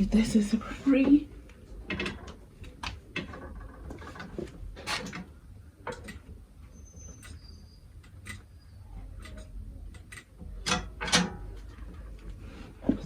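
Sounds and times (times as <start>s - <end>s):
sewing machine belt clicks and knocks: 1.8s - 6.4s, 9.2s - 12.4s.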